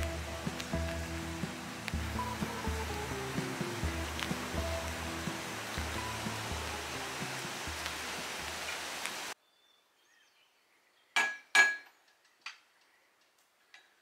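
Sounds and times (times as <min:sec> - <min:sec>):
background music: 0:00.0 - 0:08.7
steady rushing noise: 0:00.0 - 0:09.4.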